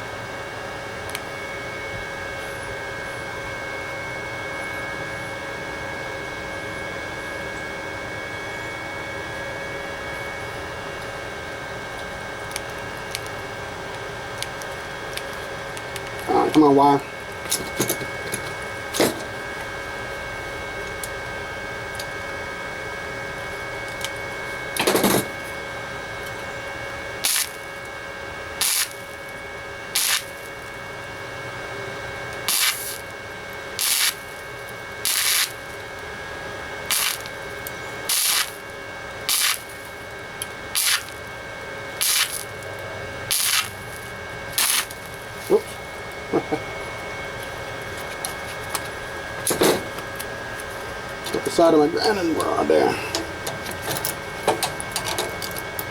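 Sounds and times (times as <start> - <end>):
steady hum: 0.0 - 55.9
welding arc bursts: 27.2 - 30.9, 32.4 - 36.0, 36.8 - 45.6.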